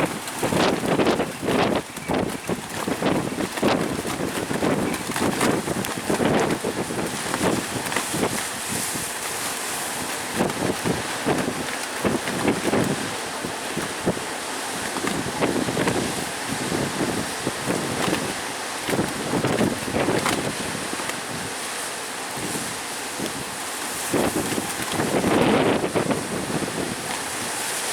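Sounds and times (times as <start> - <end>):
heavy surf hiss: 0.0 - 27.9
wind buffeting microphone: 0.0 - 27.9.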